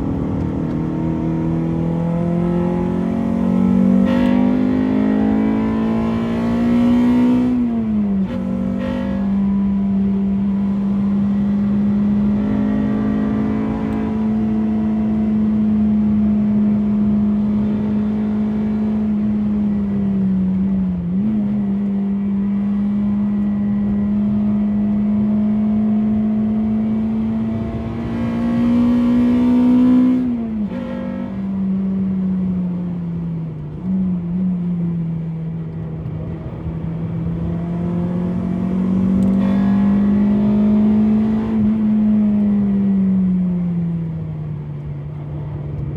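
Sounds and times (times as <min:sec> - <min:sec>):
car engine revving high: 0:00.0 - 0:32.5, 0:36.0 - 0:44.2.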